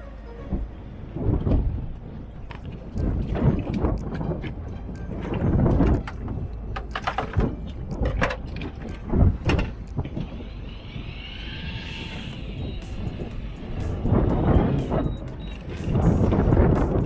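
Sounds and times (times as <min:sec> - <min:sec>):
low rumble: 0:00.0 - 0:17.0
knocks and clatter: 0:02.5 - 0:10.3.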